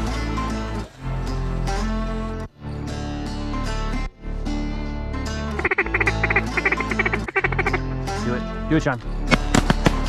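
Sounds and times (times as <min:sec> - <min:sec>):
background music: 0:00.0 - 0:10.0
ducks quacking: 0:05.6 - 0:08.0.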